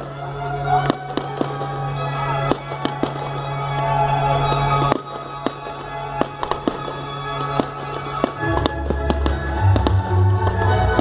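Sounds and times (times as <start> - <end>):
fireworks bangs and crackles: 0.0 - 11.0
music with deep bass: 0.0 - 11.0.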